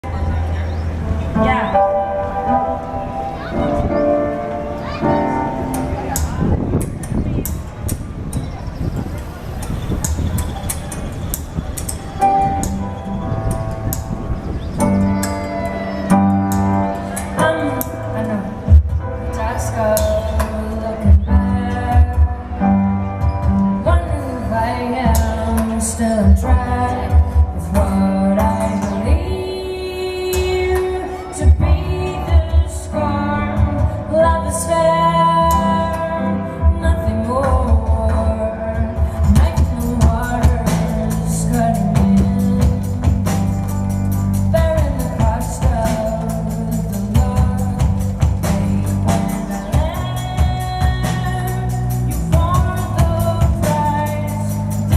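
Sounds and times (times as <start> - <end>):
bass: 0.0 - 54.9
live pop band playing: 0.0 - 54.9
drums steady beat: 5.7 - 19.1, 39.0 - 54.9
person singing: 14.8 - 22.8, 23.8 - 43.6, 44.3 - 54.9.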